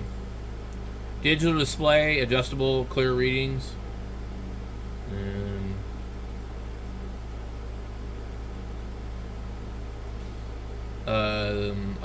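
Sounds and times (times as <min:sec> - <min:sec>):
electrical hum and hiss: 0:00.0 - 0:12.0
man humming: 0:05.0 - 0:06.0, 0:11.1 - 0:12.0.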